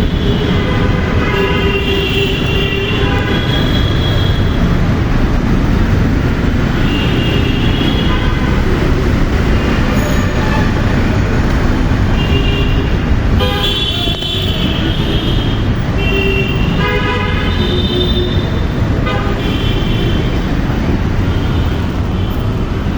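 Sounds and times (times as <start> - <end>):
vehicle horns honking: 0.0 - 4.8, 6.6 - 11.3, 11.9 - 20.5
road traffic rumble: 0.0 - 22.9.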